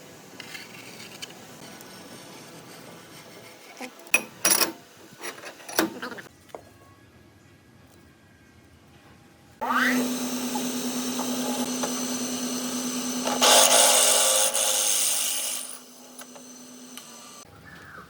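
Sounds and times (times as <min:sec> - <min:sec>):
electric power tool running: 0:09.6 - 0:17.4.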